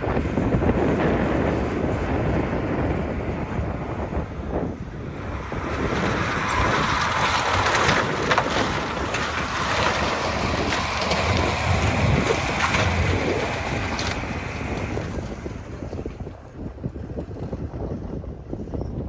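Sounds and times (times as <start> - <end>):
tractor engine running: 0.0 - 17.9.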